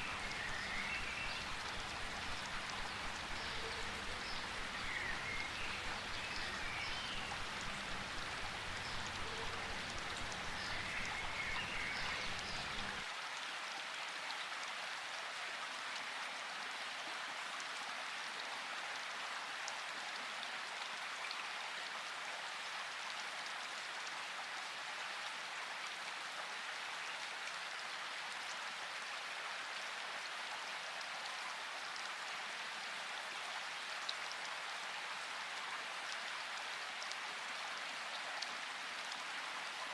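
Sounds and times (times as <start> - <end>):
rain falling: 0.0 - 13.2.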